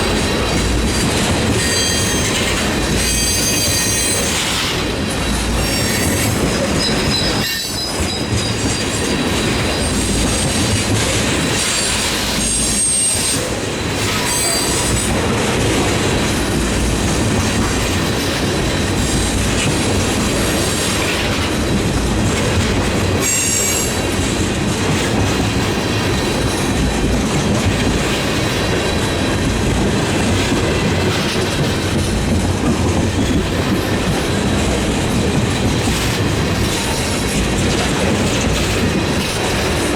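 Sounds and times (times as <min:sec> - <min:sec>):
freight train rumbling: 0:00.0 - 0:39.9
high-pitched wheel squeals: 0:01.6 - 0:04.4.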